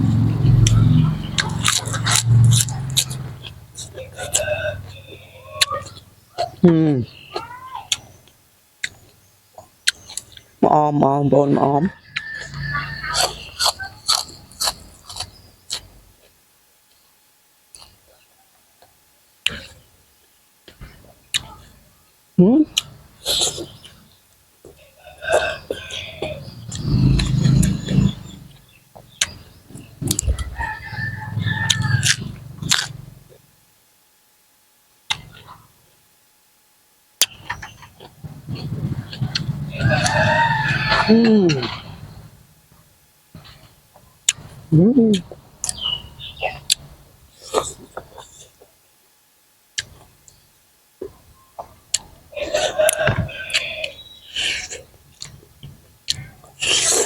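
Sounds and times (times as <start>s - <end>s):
noisy mouth sounds: 3.8s - 7.2s, 25.3s - 28.6s, 41.0s - 42.0s, 44.3s - 45.8s, 46.4s - 48.7s, 51.9s - 57.0s
rooster crowing: 4.2s - 5.7s, 11.8s - 13.4s, 24.8s - 26.6s, 30.2s - 32.4s, 39.7s - 42.0s, 52.4s - 54.1s.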